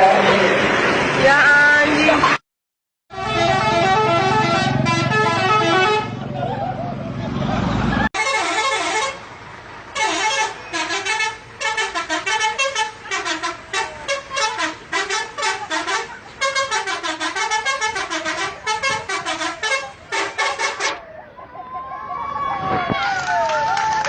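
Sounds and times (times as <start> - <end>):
multi-tone bus horn playing tune: 3.1 - 6.3, 8.2 - 21.0.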